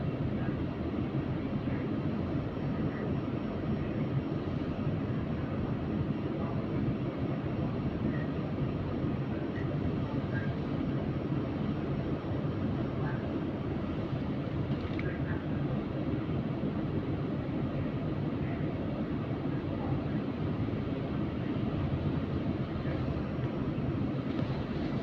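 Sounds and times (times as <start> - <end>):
bus rumbling along road: 8.4 - 25.0.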